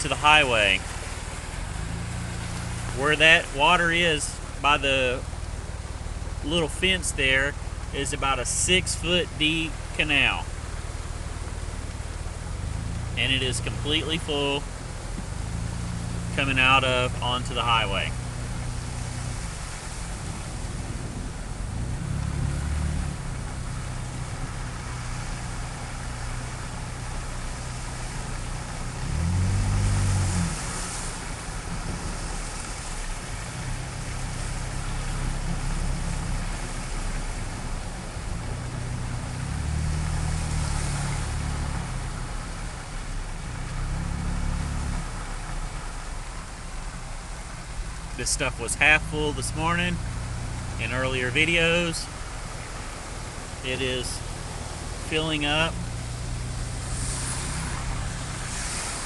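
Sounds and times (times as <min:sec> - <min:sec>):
vehicle engine running: 0:00.0 - 0:59.0
vehicles passing on wet road: 0:00.0 - 0:59.0.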